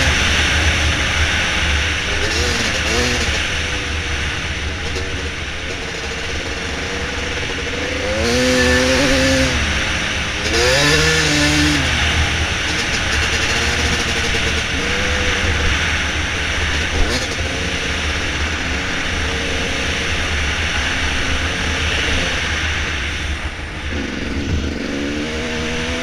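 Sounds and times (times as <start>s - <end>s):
dirt bike engine revving: 0.0s - 26.0s.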